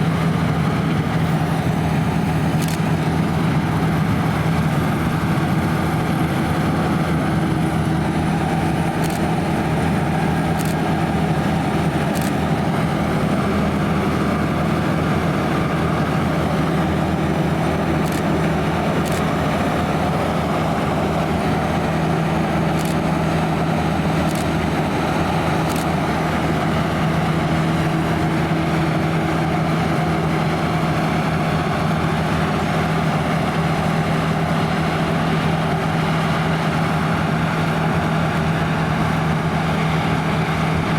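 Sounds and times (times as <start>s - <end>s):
combine harvester drone: 0.0s - 40.9s
faint high clicks: 25.7s - 25.9s.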